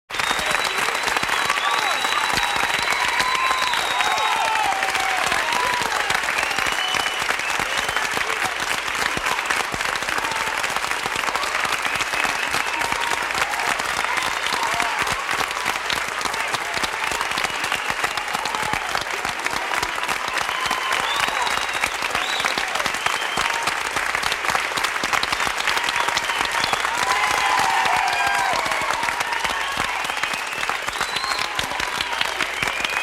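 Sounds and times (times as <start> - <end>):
crowd clapping: 0.0 - 33.0
people yelling and whooping: 1.5 - 6.4, 26.8 - 30.0.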